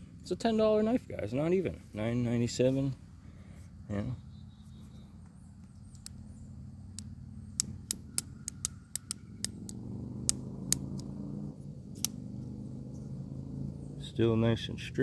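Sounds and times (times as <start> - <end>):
steady low hum: 1.1 - 15.0
folding knife clicks: 7.0 - 11.1, 12.0 - 12.2.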